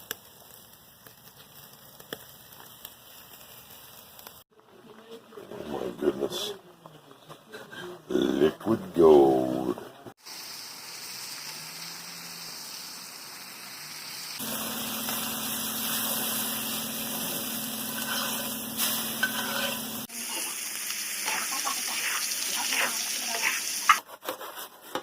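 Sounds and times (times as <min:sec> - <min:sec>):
oil pops and crackles: 0:00.0 - 0:04.4
food sizzling in a pan: 0:00.0 - 0:04.6, 0:10.2 - 0:24.1.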